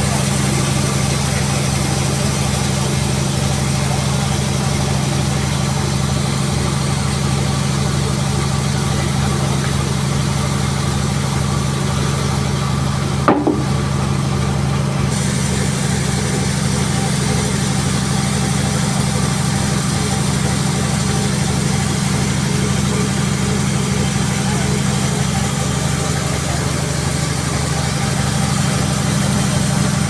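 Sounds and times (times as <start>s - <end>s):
sawmill engine running: 0.0s - 30.0s
sharp knock: 13.3s - 13.9s.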